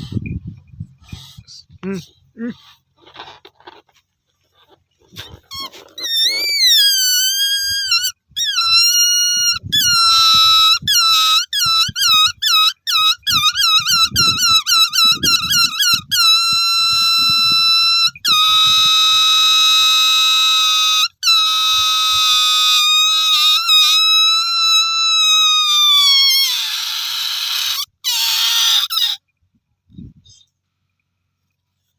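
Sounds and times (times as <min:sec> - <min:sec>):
balloon squealing: 0:05.1 - 0:29.2.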